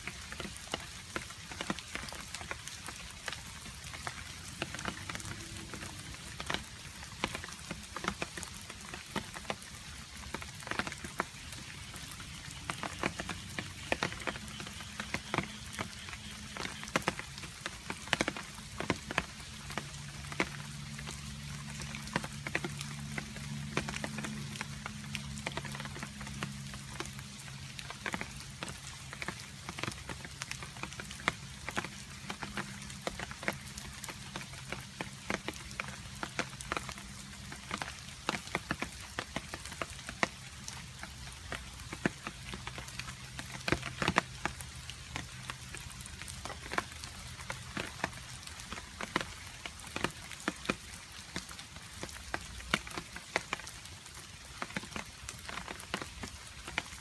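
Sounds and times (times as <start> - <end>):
steady rain: 0.0 - 57.0
water drops dripping: 0.1 - 49.2.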